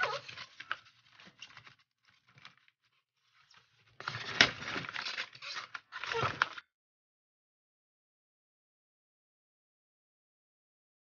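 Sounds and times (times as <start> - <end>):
packaging rustling and crinkling: 0.0 - 6.6.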